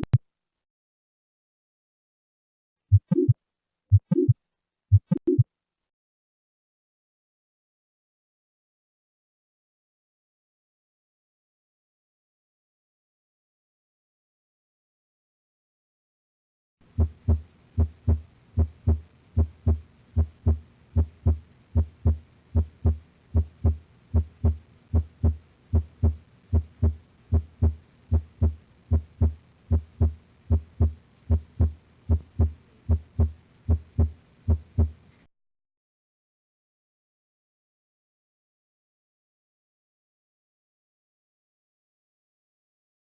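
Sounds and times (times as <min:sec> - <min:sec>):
heartbeat through stethoscope: 0:02.9 - 0:05.4, 0:16.9 - 0:35.0.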